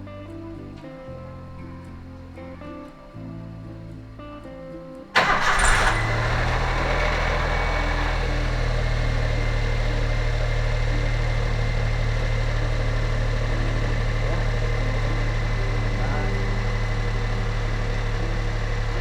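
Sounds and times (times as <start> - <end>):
car engine idling: 5.1 - 19.0
car engine starting: 5.1 - 19.0.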